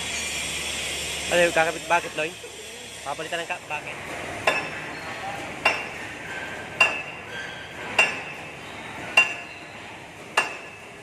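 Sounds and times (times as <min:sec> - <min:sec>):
hammer striking steel: 0:04.4 - 0:09.6, 0:10.2 - 0:11.0.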